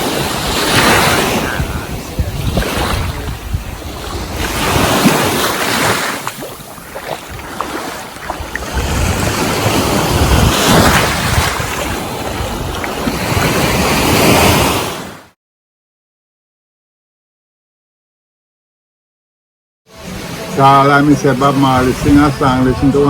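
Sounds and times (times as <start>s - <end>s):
wind buffeting microphone: 0.0s - 14.7s, 20.0s - 23.0s
ocean surf on beach: 0.0s - 15.4s, 19.9s - 23.0s.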